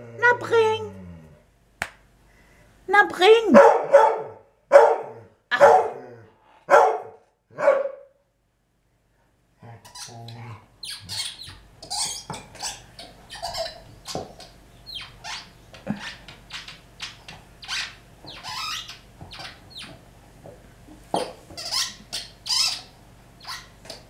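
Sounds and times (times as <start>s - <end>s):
rubber squeaky ball squeaking: 10.8s - 20.0s, 21.2s - 24.0s.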